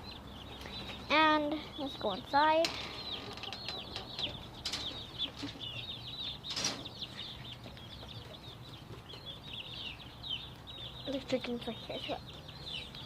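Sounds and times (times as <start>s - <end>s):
chicks peeping: 0.0s - 13.0s.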